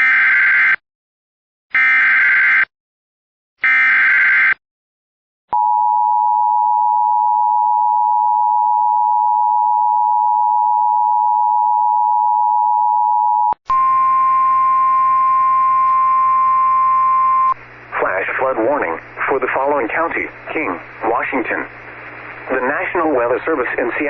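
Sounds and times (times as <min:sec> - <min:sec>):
steady alarm tone: 0:03.6 - 0:04.6
hissing humming radio audio: 0:14.0 - 0:24.0.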